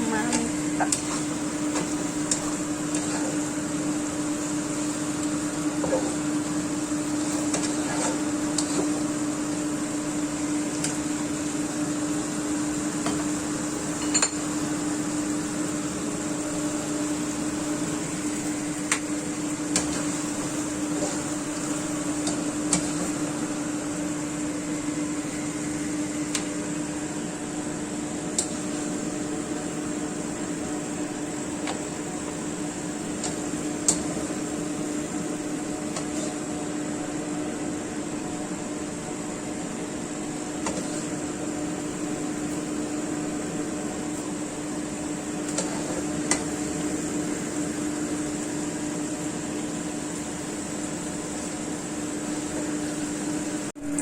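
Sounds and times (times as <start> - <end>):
kitchen appliance humming: 0.0 - 54.0.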